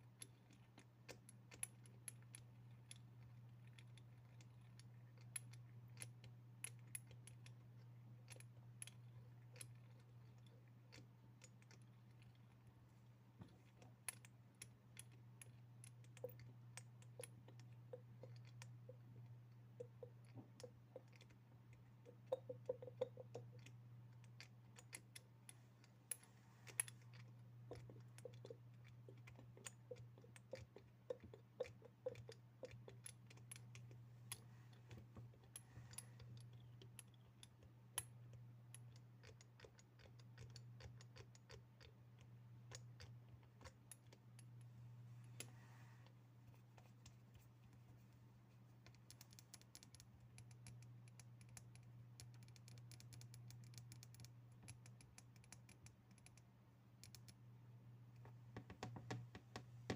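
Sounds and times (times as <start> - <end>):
steady low hum: 0.0 - 59.9
fingers tapping hard objects: 22.1 - 23.7.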